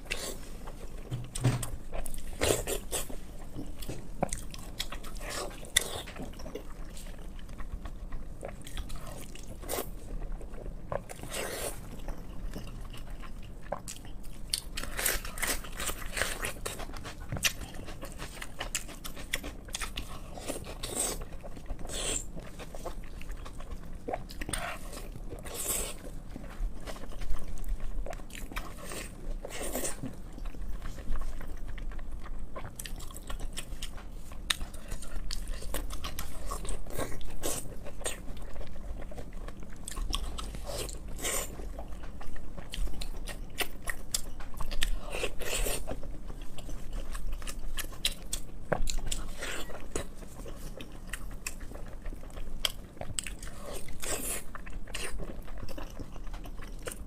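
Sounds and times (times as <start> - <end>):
person chewing food: 0.0 - 57.0.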